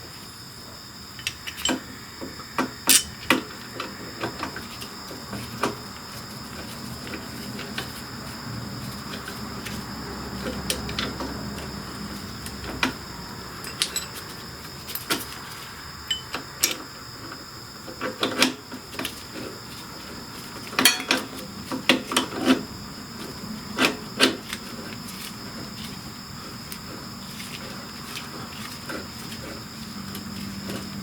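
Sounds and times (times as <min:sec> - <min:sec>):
clicks and knocks of hand work: 0:20.7 - 0:22.6.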